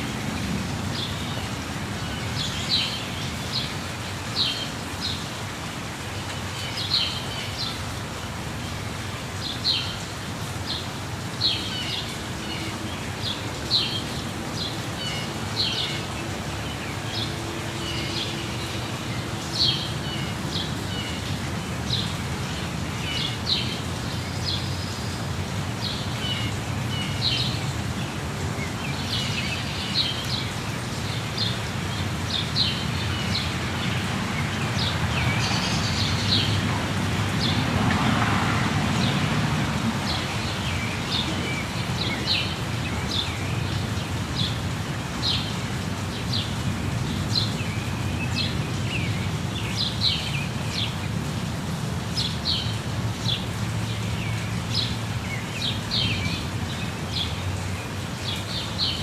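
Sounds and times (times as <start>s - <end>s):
waterfall rushing: 0.0s - 59.0s
small birds chirping: 39.0s - 51.2s.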